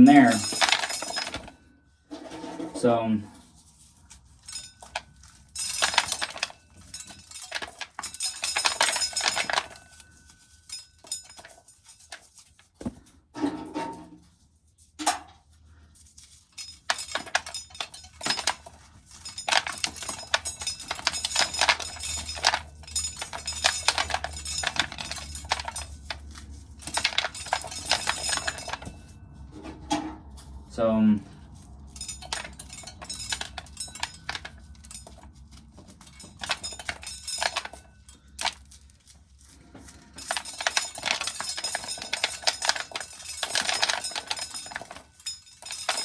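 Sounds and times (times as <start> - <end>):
corn kernels rattling in sheller: 0.0 - 1.6, 2.5 - 13.1, 15.5 - 29.5, 30.4 - 46.0.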